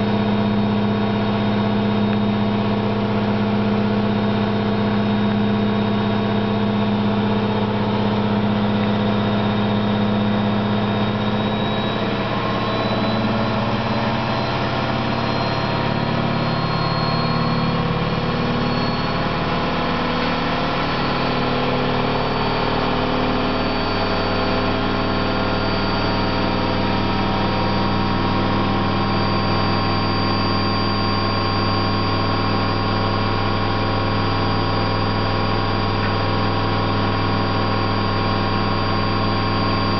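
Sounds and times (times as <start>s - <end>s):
washing machine spinning: 0.0s - 39.9s
faint high whine: 0.2s - 39.9s.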